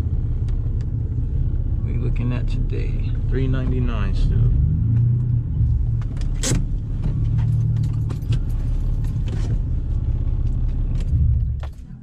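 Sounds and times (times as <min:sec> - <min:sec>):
car engine idling: 0:00.0 - 0:12.0
keys jingling: 0:07.4 - 0:09.3.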